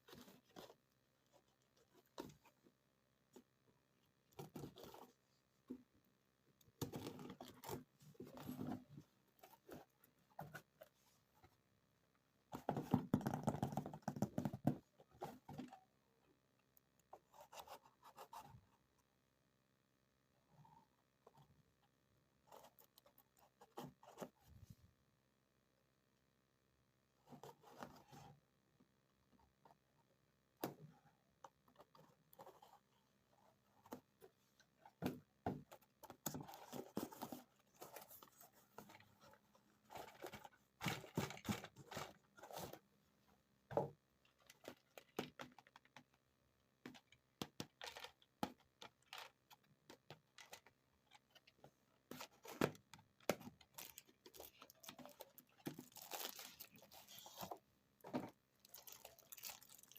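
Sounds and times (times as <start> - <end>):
plastic packaging crinkling: 53.7 - 57.4, 58.6 - 59.9.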